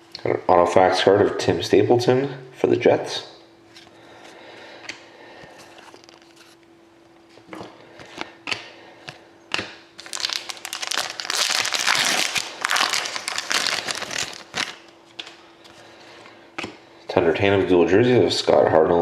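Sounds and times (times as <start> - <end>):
card packaging crinkling: 5.6 - 6.6, 10.0 - 15.4.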